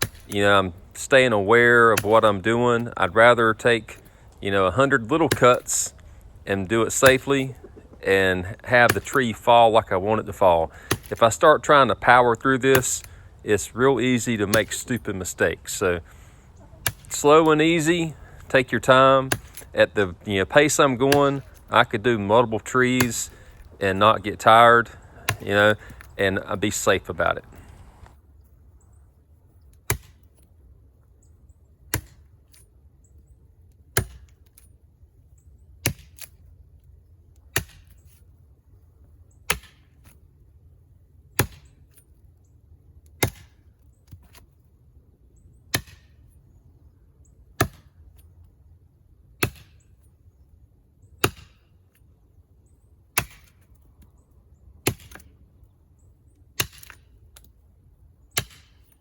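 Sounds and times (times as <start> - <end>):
brush knife chopping tree trunk: 0.0 - 0.6, 1.7 - 28.1, 29.8 - 30.3, 31.9 - 32.2, 34.0 - 34.3, 35.8 - 36.3, 37.5 - 38.0, 39.5 - 40.0, 41.4 - 41.8, 43.2 - 44.5, 45.7 - 46.2, 47.6 - 48.0, 49.4 - 49.8, 51.2 - 51.6, 53.2 - 53.7, 54.8 - 55.3, 56.6 - 57.1, 58.4 - 59.0.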